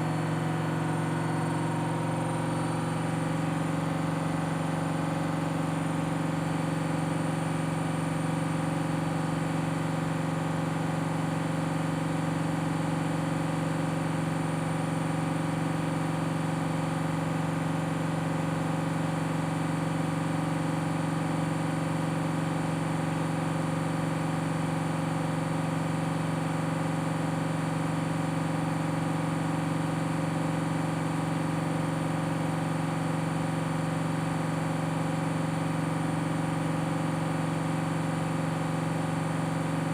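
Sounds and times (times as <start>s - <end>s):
washing machine spinning: 0.0s - 5.9s.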